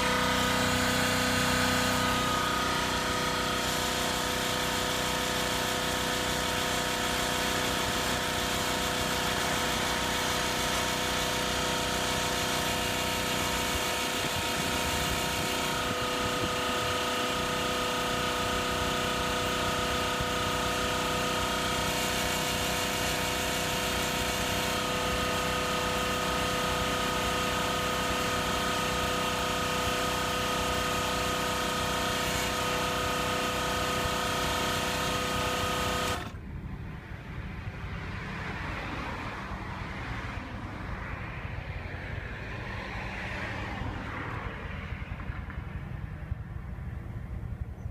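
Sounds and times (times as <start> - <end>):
air compressor running: 0.0 - 36.4.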